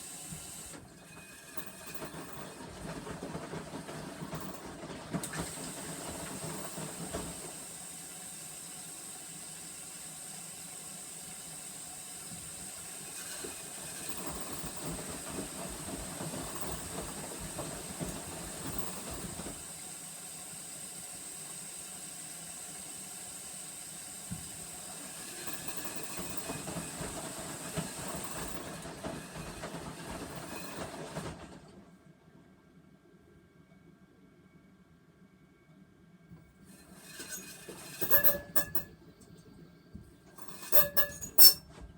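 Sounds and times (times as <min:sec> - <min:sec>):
washing machine hiss: 0:00.0 - 0:00.8, 0:05.2 - 0:31.4
washing machine rattling clatter: 0:00.4 - 0:07.8, 0:12.4 - 0:19.8, 0:24.6 - 0:31.8, 0:36.8 - 0:39.0, 0:40.2 - 0:41.9.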